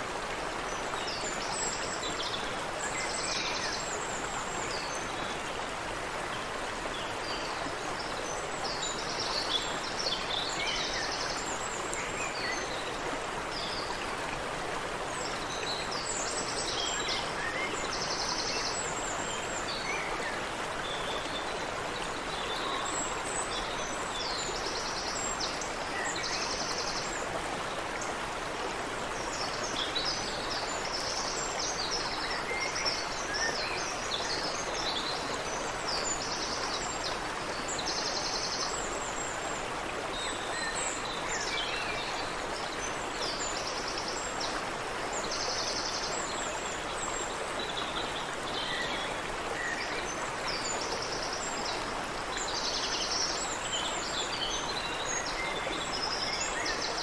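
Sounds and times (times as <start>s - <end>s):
creek water running: 0.0s - 57.0s.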